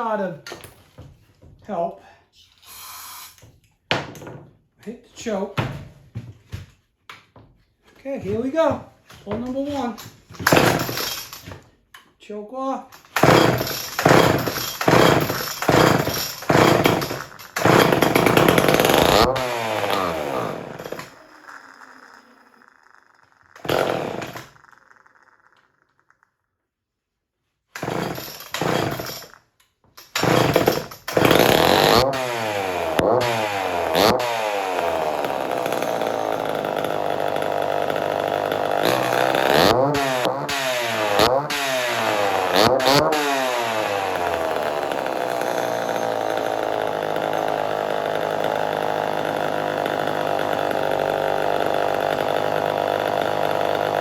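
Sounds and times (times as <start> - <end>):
chainsaw starting and revving: 9.4 - 11.6, 13.0 - 26.2, 27.7 - 29.4, 30.0 - 54.0.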